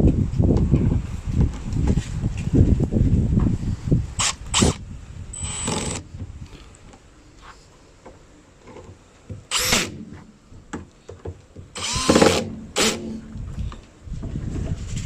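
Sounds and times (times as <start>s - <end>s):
cordless drill whirring: 4.2s - 4.8s, 5.4s - 6.0s, 9.5s - 10.1s, 11.8s - 13.2s.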